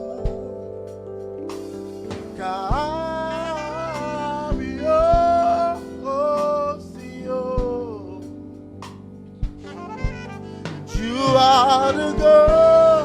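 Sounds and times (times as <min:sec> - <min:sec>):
sustained keyboard chords: 0:00.0 - 0:13.0
drum hits: 0:01.5 - 0:03.3, 0:04.5 - 0:05.7, 0:08.8 - 0:13.0
sliding held vocal melody: 0:02.0 - 0:08.4, 0:09.6 - 0:13.0.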